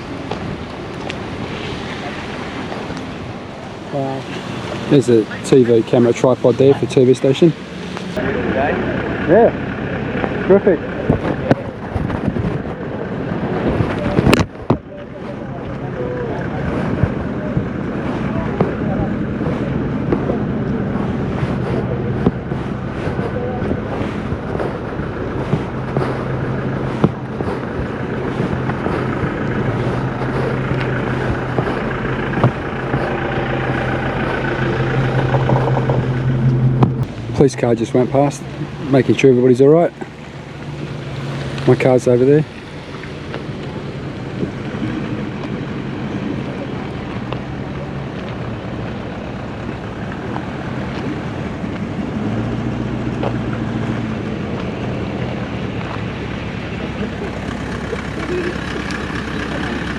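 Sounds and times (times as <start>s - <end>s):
rushing flooded river: 0.0s - 9.5s
continuous rushing noise: 0.0s - 59.9s
vehicle engine humming: 0.0s - 59.9s
wind noise on microphone: 11.0s - 37.4s.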